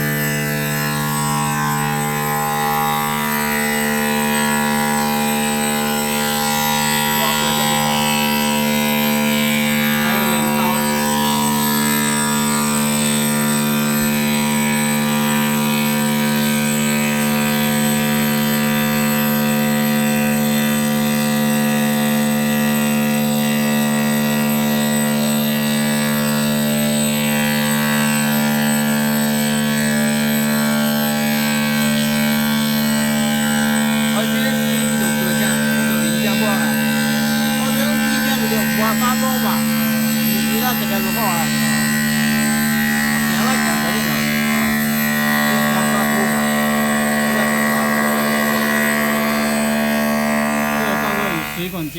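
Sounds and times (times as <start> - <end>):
machine humming: 0.0 - 51.9.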